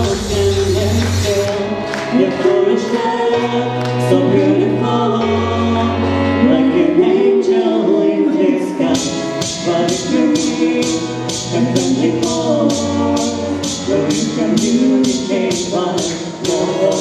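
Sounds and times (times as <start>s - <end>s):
held bass notes: 0.0s - 2.6s
voices singing in harmony: 0.0s - 17.0s.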